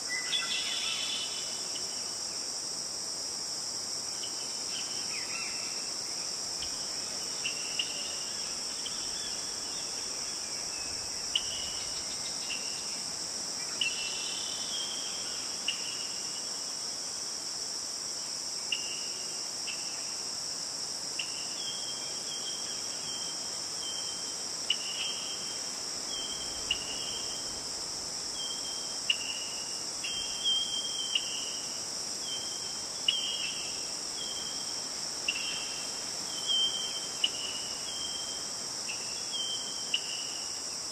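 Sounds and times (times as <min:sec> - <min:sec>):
insects chorus: 0:00.0 - 0:40.9.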